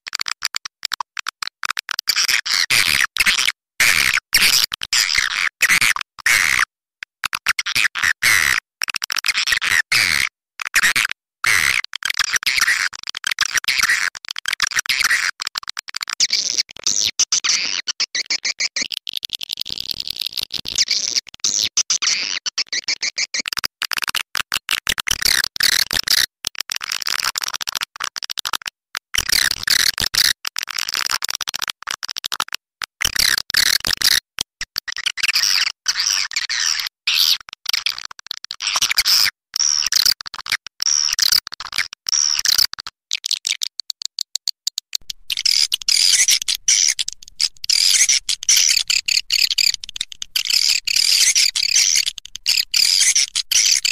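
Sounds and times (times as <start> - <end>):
swiftlets chirping: 45.0 - 53.9.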